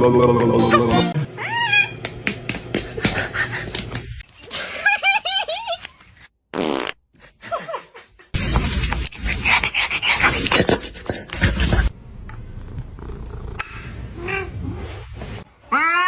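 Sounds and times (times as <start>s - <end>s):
cat meowing: 15.7s - 16.0s.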